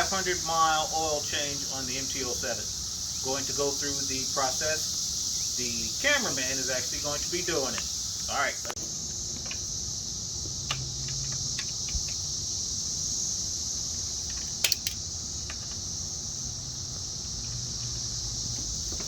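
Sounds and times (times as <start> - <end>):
high-pitched insect chorus: 0.0 - 19.0
sharp double click: 14.6 - 15.0.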